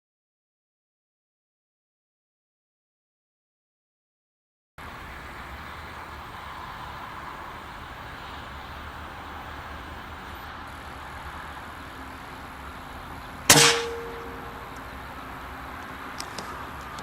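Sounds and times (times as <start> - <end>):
outdoor background noise: 4.8 - 17.0
air rifle shot: 13.5 - 14.6.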